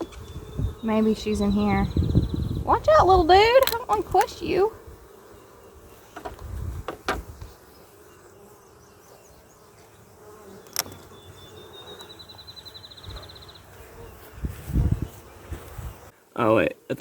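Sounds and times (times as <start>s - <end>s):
honeybees buzzing: 0.0s - 17.0s
hive frames clicking: 3.5s - 4.6s, 6.1s - 7.6s, 10.5s - 11.2s.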